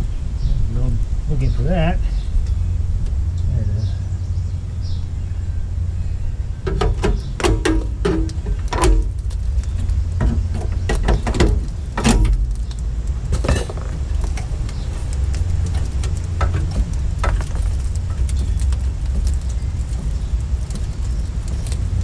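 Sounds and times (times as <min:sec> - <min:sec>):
steady low rumble: 0:00.0 - 0:22.0
metallic clanks and knocks: 0:06.6 - 0:09.3, 0:10.2 - 0:12.6, 0:13.3 - 0:14.5, 0:15.6 - 0:19.3.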